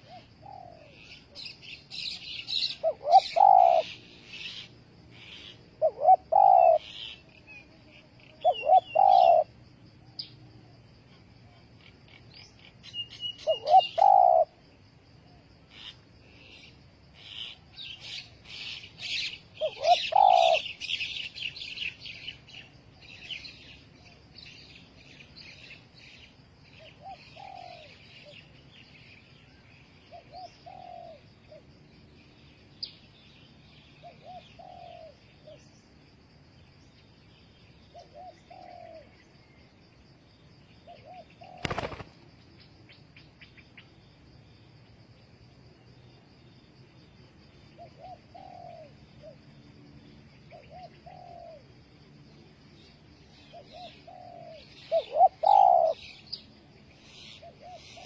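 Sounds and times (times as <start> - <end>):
dove cooing: 0.0 - 1.5, 2.4 - 7.6, 8.2 - 9.6, 13.1 - 14.6, 17.2 - 22.3, 26.8 - 28.4, 30.1 - 31.6, 34.0 - 35.6, 37.9 - 39.2, 40.9 - 42.2, 47.7 - 49.4, 50.5 - 51.7, 53.4 - 56.2, 57.0 - 58.0
small birds chirping: 0.0 - 14.9, 15.6 - 44.2, 52.7 - 58.0.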